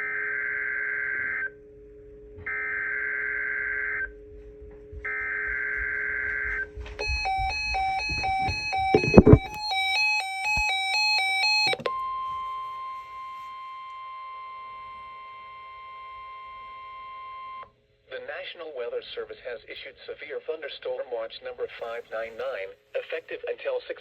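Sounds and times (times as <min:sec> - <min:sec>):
low steady hum: 0:01.2 - 0:10.8
electronic chime tones: 0:07.0 - 0:10.7
heavy low thud: 0:07.1 - 0:09.6
steady alert tone: 0:07.5 - 0:09.6
screechy digital data bursts: 0:07.8 - 0:09.6.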